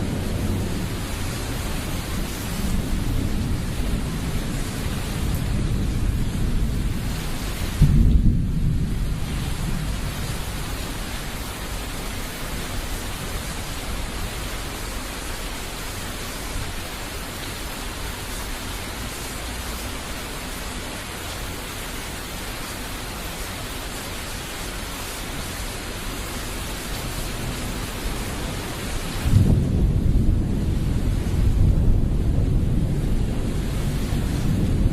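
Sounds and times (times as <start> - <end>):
thunder rumbling: 0.0 - 14.4, 27.0 - 34.9
rain hissing: 0.0 - 34.9.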